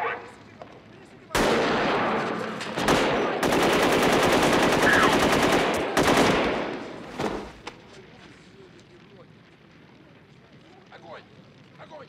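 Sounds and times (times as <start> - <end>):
automatic gunfire bursts: 1.4 - 7.6.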